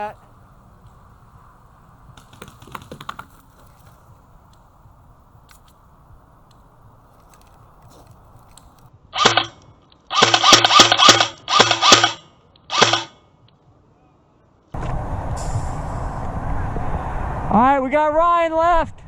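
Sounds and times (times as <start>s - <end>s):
airsoft gun firing bursts: 9.2s - 13.1s.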